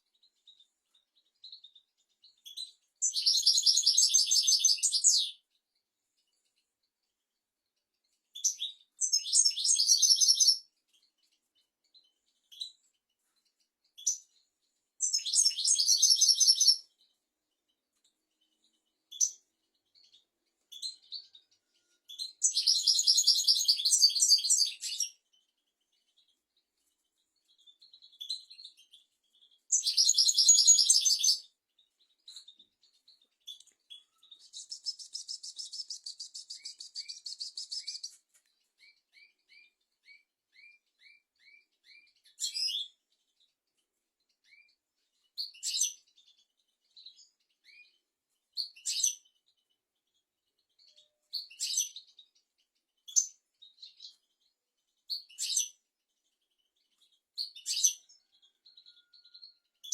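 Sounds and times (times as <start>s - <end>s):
goldfinch singing: 1.4s - 5.4s, 8.4s - 11.1s, 15.0s - 17.1s, 18.4s - 26.3s, 27.4s - 43.5s.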